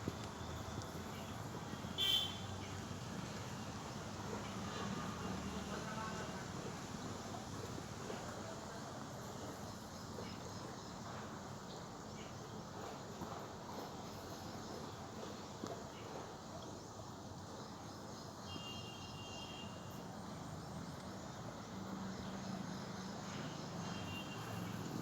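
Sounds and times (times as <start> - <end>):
faint outdoor background noise: 0.0 - 25.0.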